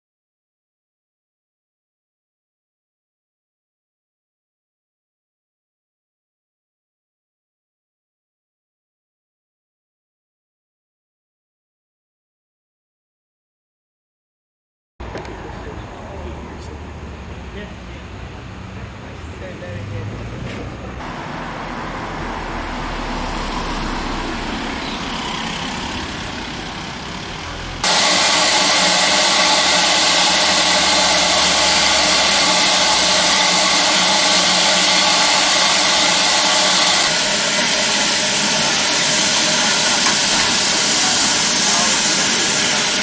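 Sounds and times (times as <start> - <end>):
locomotive low rumble: 15.0 - 37.0
loud hiss of steam: 21.0 - 43.0.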